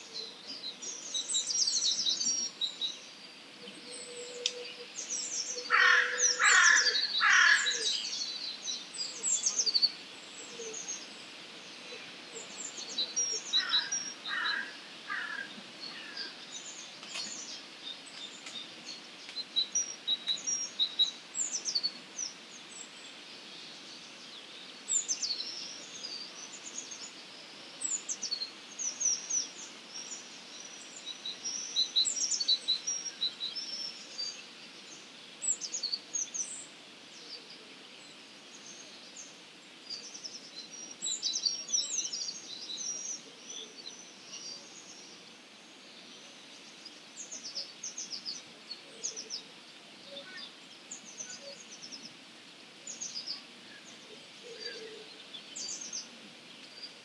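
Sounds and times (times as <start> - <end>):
songbirds chirping: 0.0 - 57.0
crow cawing: 5.7 - 7.9, 13.6 - 15.5.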